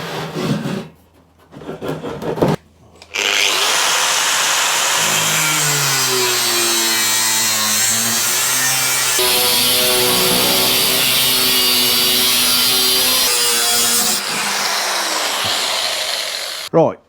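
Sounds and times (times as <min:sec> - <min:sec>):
electric power tool cutting: 0:03.1 - 0:16.7.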